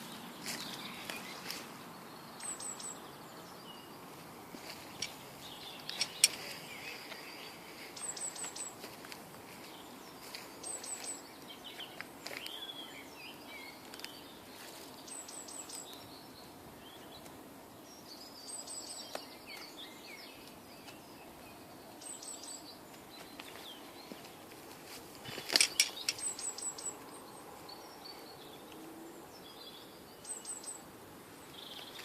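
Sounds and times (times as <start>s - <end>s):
songbirds singing: 0.0s - 32.0s
warbling birdsong: 0.0s - 32.0s.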